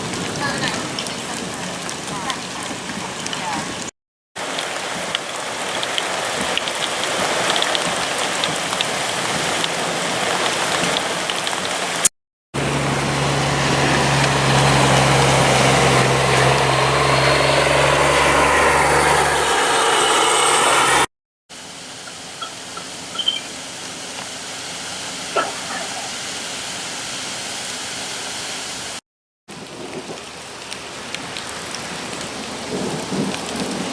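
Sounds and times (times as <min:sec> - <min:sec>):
rain hissing: 0:00.0 - 0:33.9
vehicle engine running: 0:12.6 - 0:21.1.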